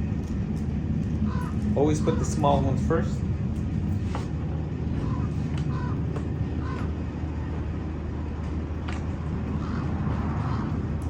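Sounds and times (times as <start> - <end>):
low background rumble: 0.0 - 11.0.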